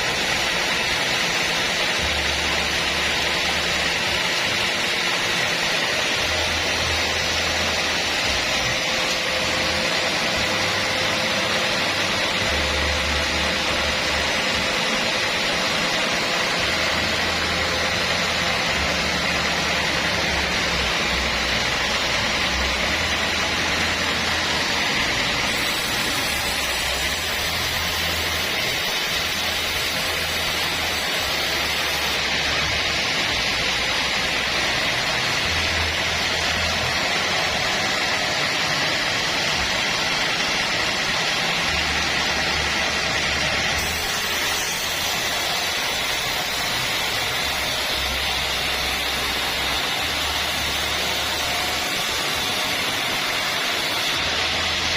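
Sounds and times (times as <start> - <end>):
band saw hissing: 25.3 - 32.8, 43.8 - 54.9.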